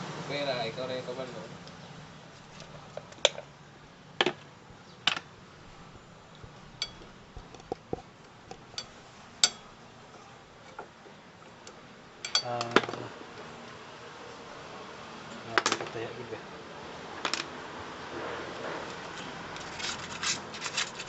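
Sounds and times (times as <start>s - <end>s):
light metallic clinks and taps: 6.8s - 8.0s, 12.2s - 13.0s.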